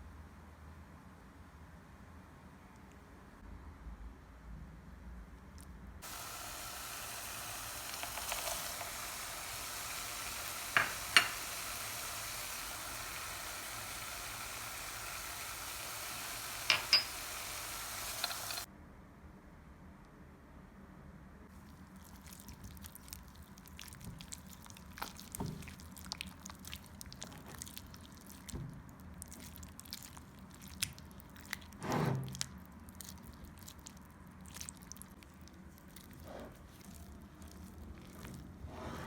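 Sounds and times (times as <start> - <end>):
soft squishing food handling: 21.5 - 38.8.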